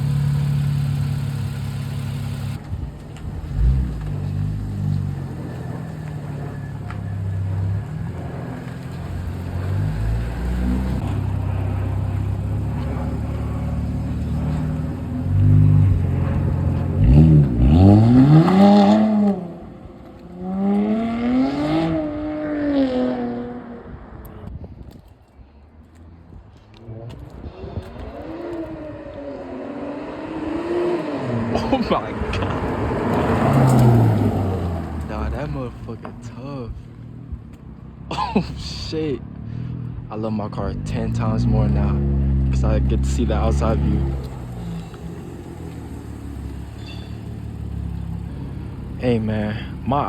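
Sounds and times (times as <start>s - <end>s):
car engine revving: 0.0s - 24.0s, 27.2s - 50.0s.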